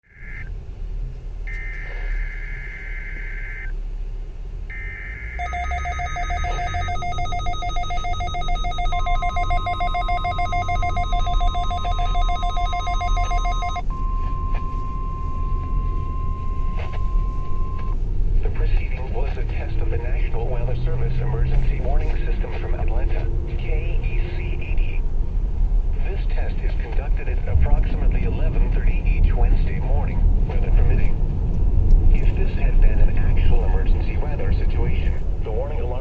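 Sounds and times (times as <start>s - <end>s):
rapidly pulsing electronic beep: 0.0s - 0.5s, 1.5s - 3.7s, 4.7s - 20.6s
low road rumble: 0.0s - 36.0s
steady warning alarm tone: 0.1s - 0.5s, 1.5s - 3.8s, 4.7s - 18.0s
warbling digital header bursts: 4.7s - 13.9s.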